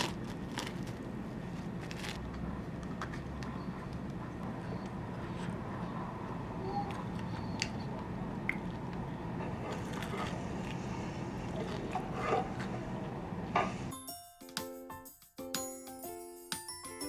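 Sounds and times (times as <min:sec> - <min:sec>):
low background rumble: 0:00.0 - 0:13.9.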